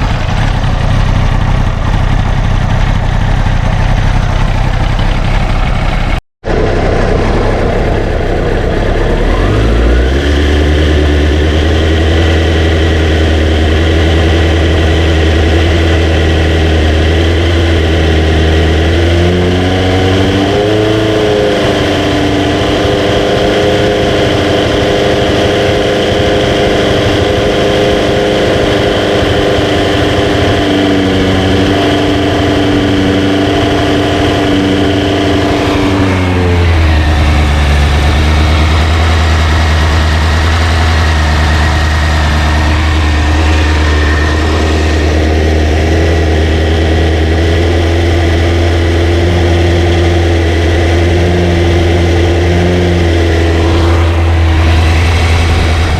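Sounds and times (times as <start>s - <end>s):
motorcycle engine idling: 0.0s - 19.2s, 21.0s - 55.9s
deep low hum: 0.0s - 19.7s, 35.2s - 55.9s.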